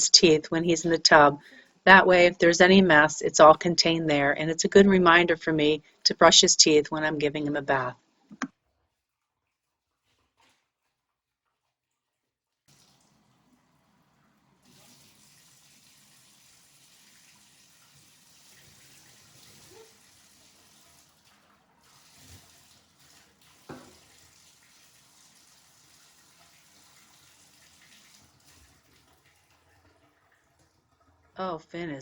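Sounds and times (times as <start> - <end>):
water running into bathtub: 9.4 - 31.6.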